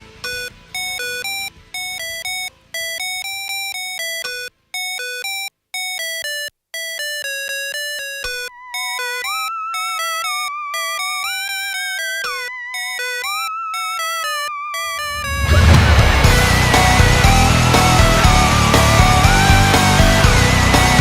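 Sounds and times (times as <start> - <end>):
wavering synth lead melody: 7.0 - 21.0
staccato synth notes: 14.8 - 21.0.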